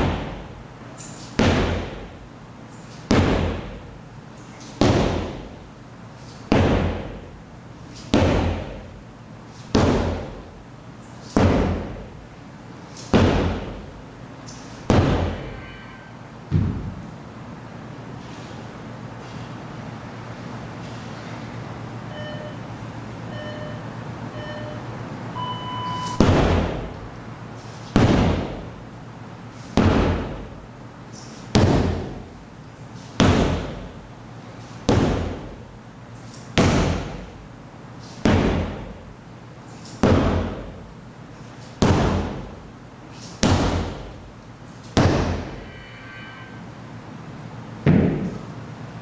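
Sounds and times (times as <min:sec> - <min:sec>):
timer countdown beeps: 0:22.1 - 0:22.7, 0:23.3 - 0:26.2.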